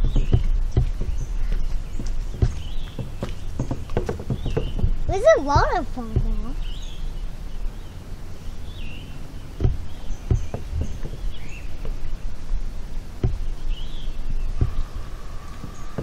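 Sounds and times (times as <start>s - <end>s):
short knocks: 0.0s - 6.8s, 9.5s - 12.2s, 13.1s - 16.0s
birds chirping: 0.0s - 16.0s
wind rumble on microphone: 0.0s - 16.0s.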